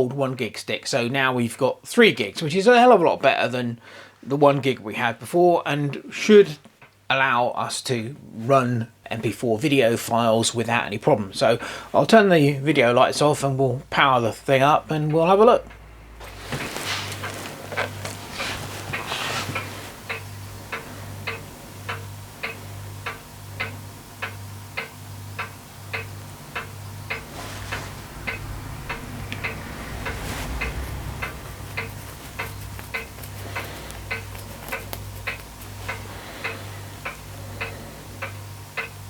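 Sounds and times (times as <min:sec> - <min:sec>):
steady ticking: 0:10.5 - 0:39.0
low pulsing hum: 0:13.6 - 0:39.0
low rumble: 0:25.6 - 0:34.5.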